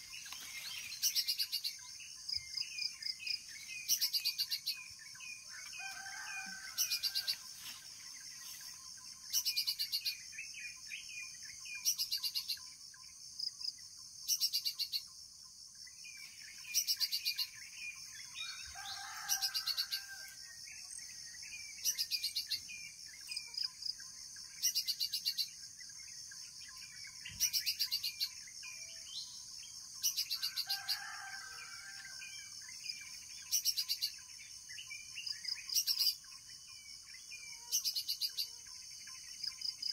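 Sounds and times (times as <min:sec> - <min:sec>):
birds chirping and calling: 0:00.0 - 0:13.1, 0:16.0 - 0:34.3.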